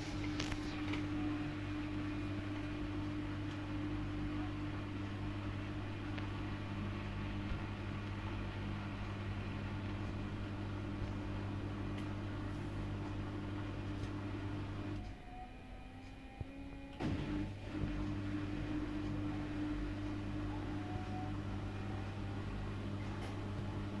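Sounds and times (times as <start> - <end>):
washing machine motor hum: 0.0 - 24.0.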